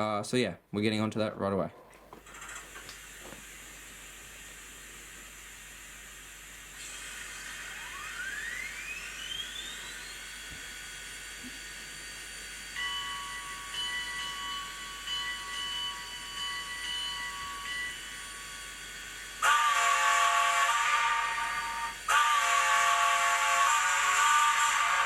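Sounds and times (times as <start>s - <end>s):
steam hiss: 2.4s - 25.0s
loud whistle blast: 7.7s - 10.3s, 19.4s - 25.0s.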